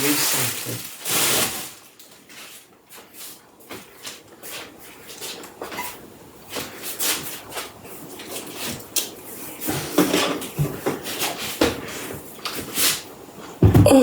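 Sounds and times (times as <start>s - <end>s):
packaging rustling and crinkling: 0.0s - 5.8s.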